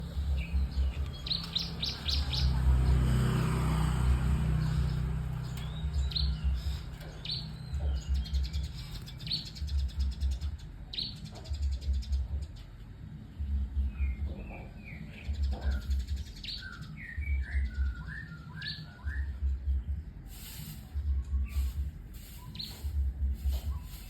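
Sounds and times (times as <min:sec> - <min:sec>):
low pulsing rumble: 0:11.5 - 0:16.4, 0:19.0 - 0:20.3, 0:20.9 - 0:24.0
bird singing whistled trills: 0:13.8 - 0:19.9.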